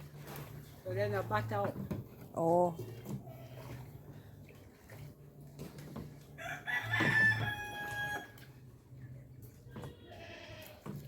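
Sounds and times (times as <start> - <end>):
rooster crowing: 6.4 - 8.4.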